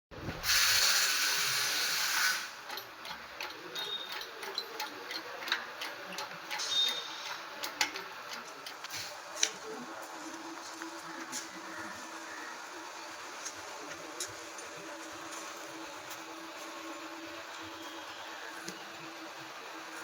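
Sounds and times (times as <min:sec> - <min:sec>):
loud engine hiss: 0:00.4 - 0:02.6
irregular engine ticks and clicks: 0:02.6 - 0:09.6.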